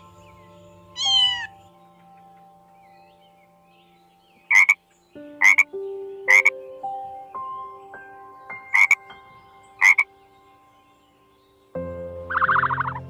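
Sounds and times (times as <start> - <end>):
frog croaking: 0.0 - 1.8, 4.5 - 5.7, 6.3 - 6.5, 8.7 - 9.0, 9.8 - 10.2, 12.3 - 13.0
tune of single rising notes: 0.0 - 4.9, 11.8 - 13.0.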